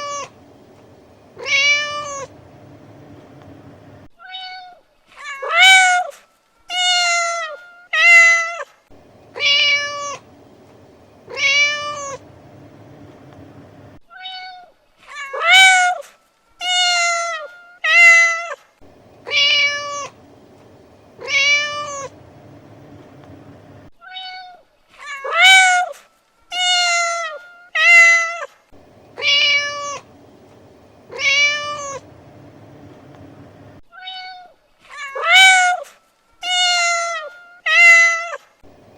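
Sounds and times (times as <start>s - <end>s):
cat meowing: 1.4s - 2.4s, 9.4s - 10.3s, 11.3s - 12.3s, 19.2s - 20.2s, 21.2s - 22.2s, 29.2s - 30.1s, 31.1s - 32.1s, 33.9s - 35.8s.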